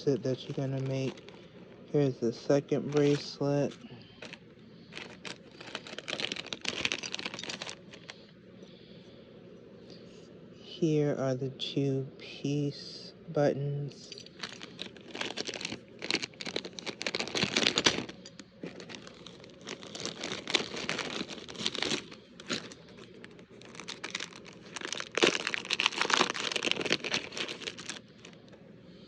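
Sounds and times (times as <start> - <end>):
packaging crinkling and rustling: 0.0 - 8.3, 14.1 - 28.6.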